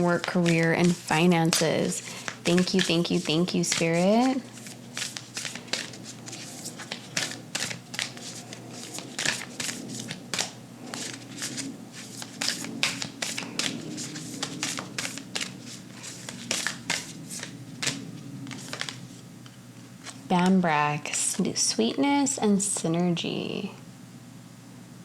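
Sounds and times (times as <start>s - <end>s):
cards being shuffled: 0.0s - 19.2s, 20.0s - 20.5s
faint low hum: 0.0s - 25.0s.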